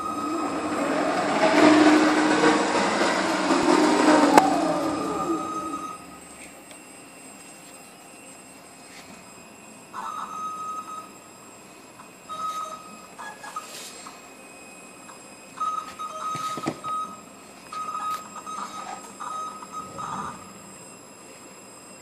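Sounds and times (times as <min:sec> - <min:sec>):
motors whining at high pitch: 0:00.0 - 0:08.6, 0:17.8 - 0:22.0.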